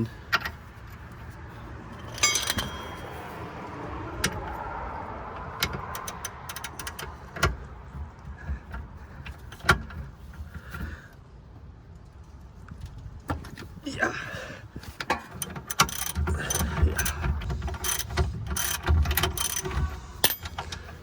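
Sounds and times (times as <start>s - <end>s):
ringing metallic clatter: 1.9s - 4.6s, 17.1s - 21.0s
wrench clicking on metal: 15.4s - 21.0s.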